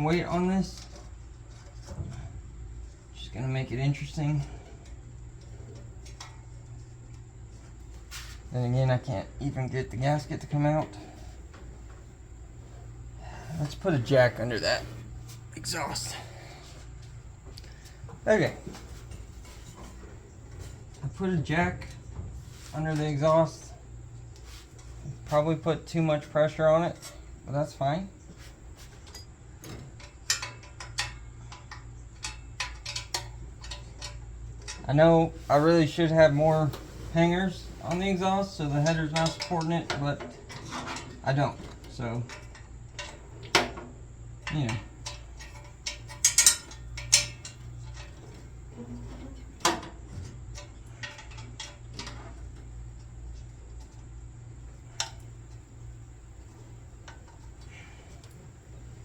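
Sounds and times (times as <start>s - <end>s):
low steady hum: 0.0s - 59.0s
hand tools clinking on metal: 29.0s - 35.1s, 35.9s - 43.2s, 44.4s - 53.2s.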